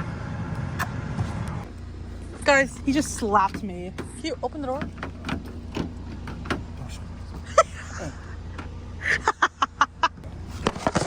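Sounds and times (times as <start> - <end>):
car idling: 0.0 - 11.0.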